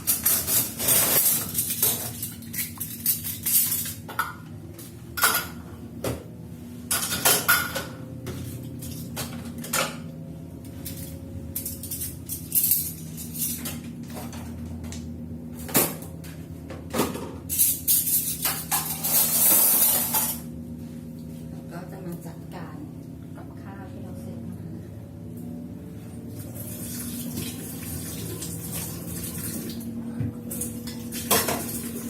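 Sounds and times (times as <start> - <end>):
steady low hum: 0.0 - 32.0
dishes and pots clinking: 6.9 - 10.0, 30.9 - 32.0.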